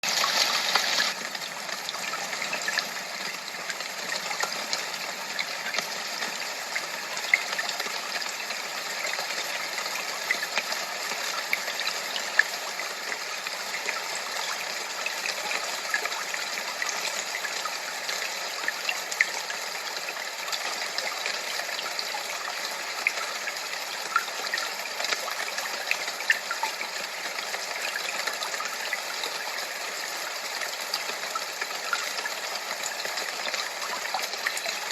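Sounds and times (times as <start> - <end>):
running water rushing: 0.0 - 34.9.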